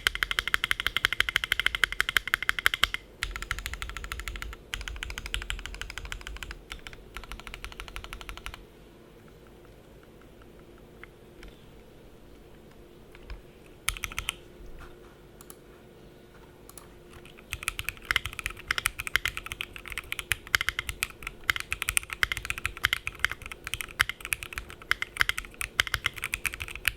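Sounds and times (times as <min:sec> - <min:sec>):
typing on mechanical keyboard: 0:00.0 - 0:08.6, 0:13.1 - 0:14.4, 0:16.7 - 0:26.9.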